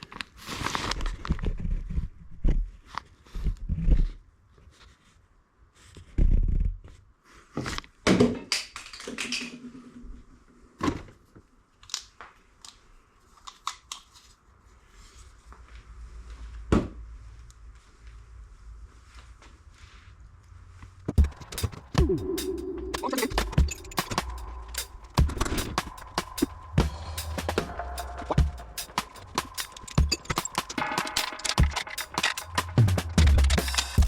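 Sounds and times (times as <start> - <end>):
tools clicking and scraping: 21.2 - 34.0.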